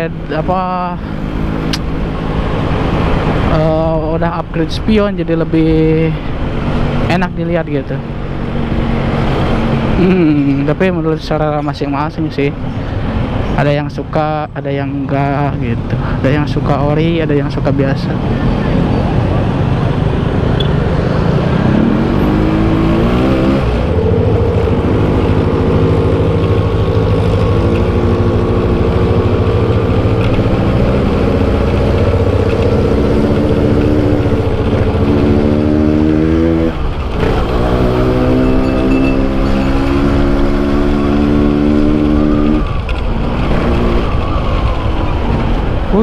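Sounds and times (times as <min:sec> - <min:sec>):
two-stroke motorcycle engine revving: 0:20.5 - 0:44.2.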